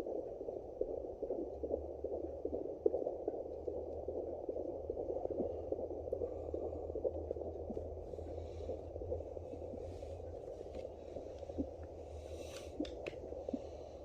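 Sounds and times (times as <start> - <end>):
doppler speaker hiss and crackle: 0.0 - 14.0
low hum: 0.0 - 14.0
scratchy ticks: 10.6 - 13.6.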